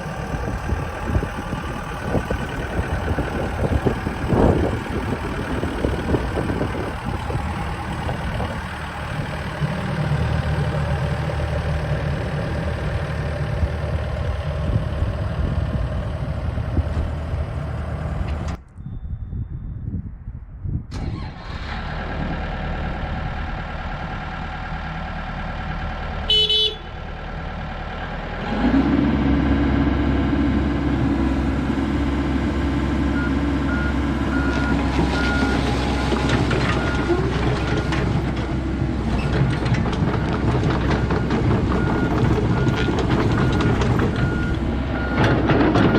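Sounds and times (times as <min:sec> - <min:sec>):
excavator diesel engine running: 0:00.0 - 0:18.6, 0:21.0 - 0:45.9
horn toot: 0:26.3 - 0:27.0.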